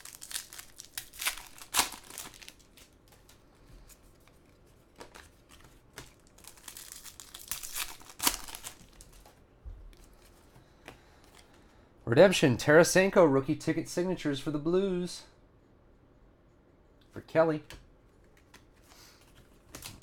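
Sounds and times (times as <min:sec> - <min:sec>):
card pack wrappers crinkling: 0:00.0 - 0:03.5, 0:04.2 - 0:09.4.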